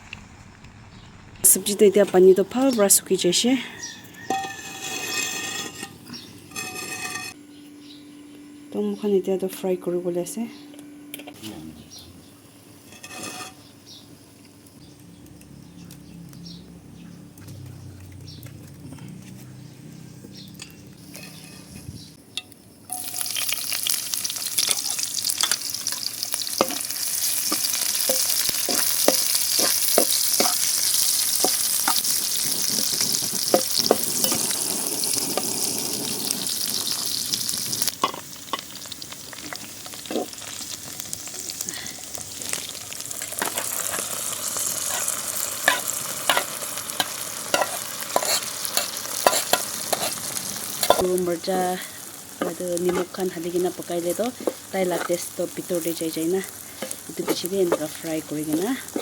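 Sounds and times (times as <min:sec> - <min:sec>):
food sizzling in a pan: 0:01.6 - 0:07.4, 0:22.9 - 0:59.0
spoon scraping and tapping pan: 0:04.1 - 0:05.9, 0:26.6 - 0:26.8, 0:27.4 - 0:32.2, 0:45.7 - 0:50.2, 0:50.8 - 0:51.1, 0:52.4 - 0:53.2.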